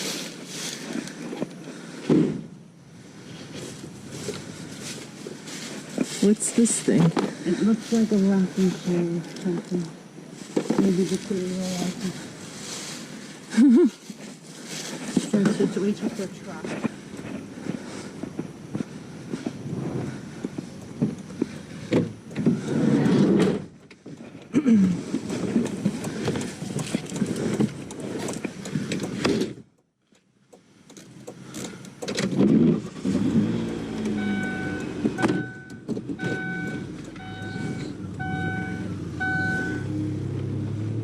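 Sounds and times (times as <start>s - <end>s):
low engine hum: 0.0s - 29.2s, 30.6s - 41.0s
items knocking and rustling: 10.4s - 12.2s
warning chime beeping: 34.1s - 39.9s.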